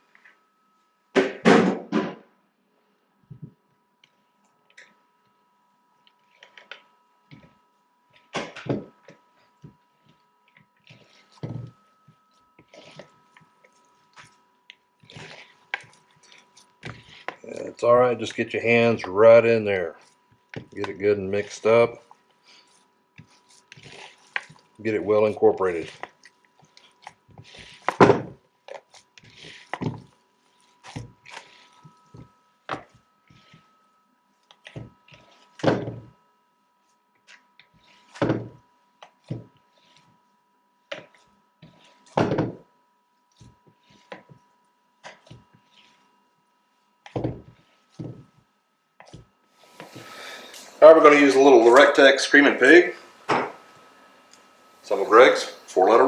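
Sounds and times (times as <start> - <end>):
hands squishing meat: 15.0 - 17.7, 22.4 - 28.0.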